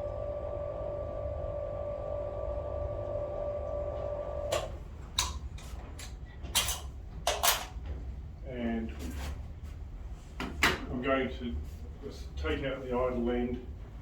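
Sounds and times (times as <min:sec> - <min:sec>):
blind motor humming: 0:00.0 - 0:04.9.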